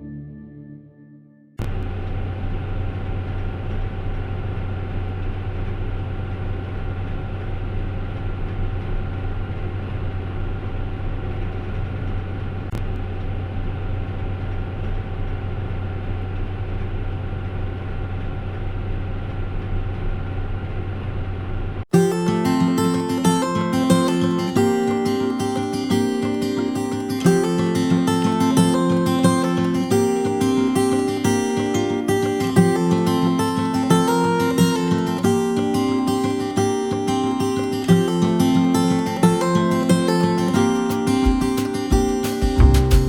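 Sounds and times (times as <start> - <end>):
deep engine drone: 1.6 - 21.9
faint steady whine: 1.6 - 40.0.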